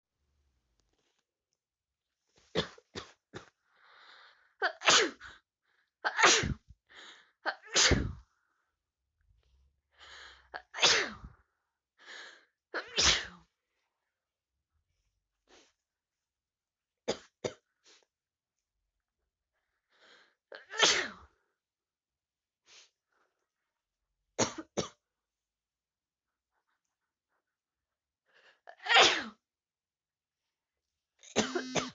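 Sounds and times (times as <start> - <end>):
faint in-breath: 3.6 - 4.6, 6.9 - 7.4, 9.9 - 10.5, 11.3 - 12.6
person sneezing: 6.1 - 6.6, 7.6 - 8.2, 10.6 - 11.3, 12.8 - 13.4, 20.6 - 21.3, 28.8 - 29.4, 31.3 - 31.9.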